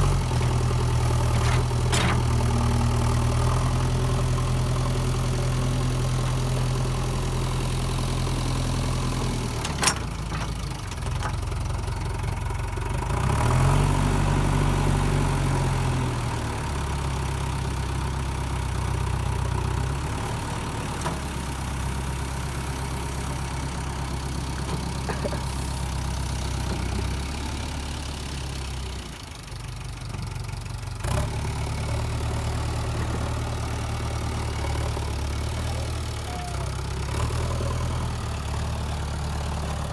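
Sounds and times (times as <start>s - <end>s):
diesel engine revving: 12.9s - 29.2s, 31.0s - 39.9s.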